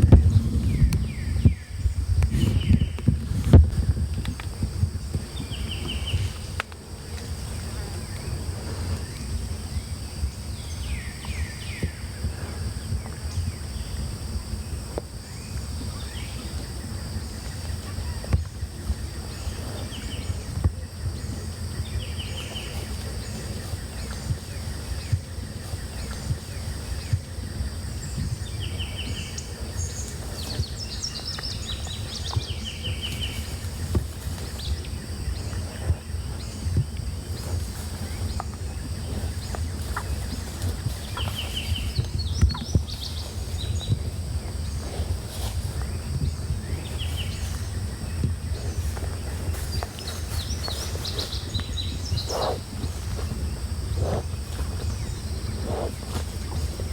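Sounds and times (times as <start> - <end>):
bird calls: 46.2 - 53.3.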